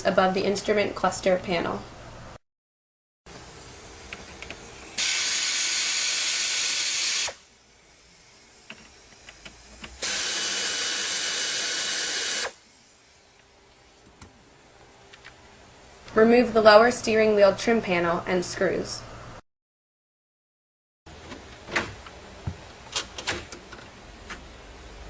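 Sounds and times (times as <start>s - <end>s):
power drill whirring: 10.0s - 12.6s.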